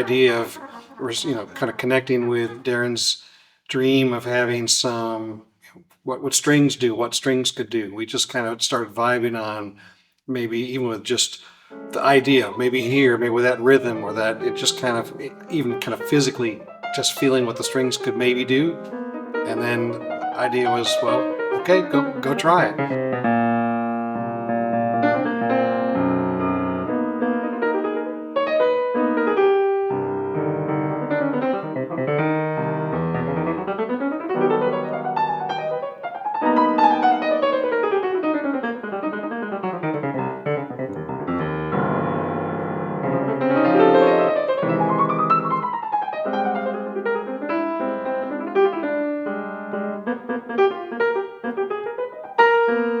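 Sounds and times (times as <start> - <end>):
piano music with fast runs: 11.8 - 53.0.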